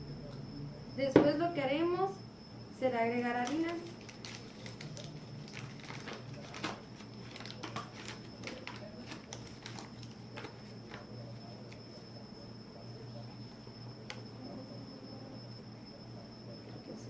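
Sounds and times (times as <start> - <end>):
faint high whine: 0.0 - 17.0.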